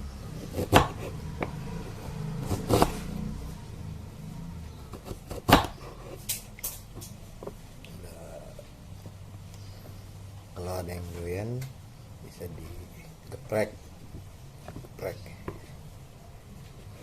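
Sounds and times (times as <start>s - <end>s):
knife cutting on a cutting board: 0.4s - 1.6s, 2.4s - 3.2s.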